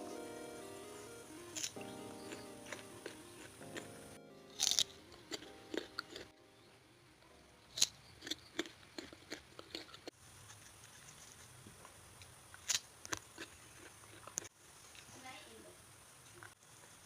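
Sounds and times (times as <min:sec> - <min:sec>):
soft background music: 0:00.0 - 0:08.2
crunchy bites of raw fruit: 0:04.6 - 0:06.3, 0:07.8 - 0:10.1, 0:12.6 - 0:14.5.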